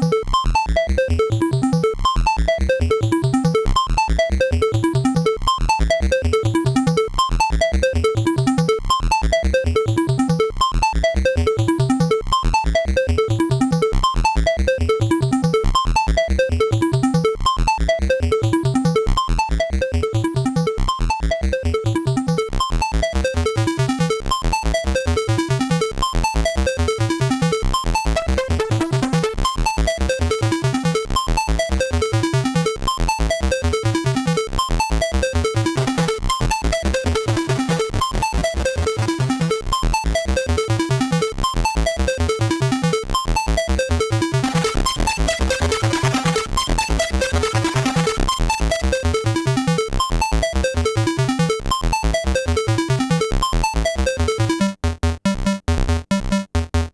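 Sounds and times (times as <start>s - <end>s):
synthesizer repeating short notes: 44.3s - 48.4s.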